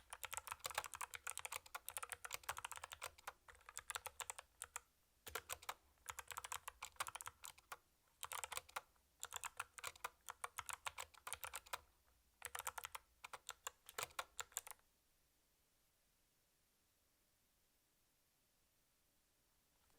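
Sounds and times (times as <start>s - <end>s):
fast typing on clicky keyboard: 0.0s - 14.8s.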